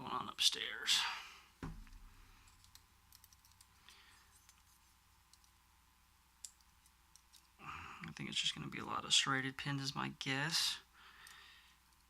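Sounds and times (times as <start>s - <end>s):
soft knock: 1.6s - 2.0s.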